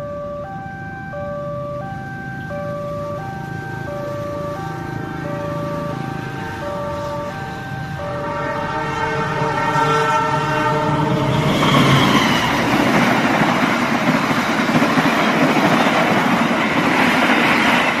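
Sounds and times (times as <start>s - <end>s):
train rumbling past: 1.8s - 18.0s
train horn chord: 5.1s - 12.5s.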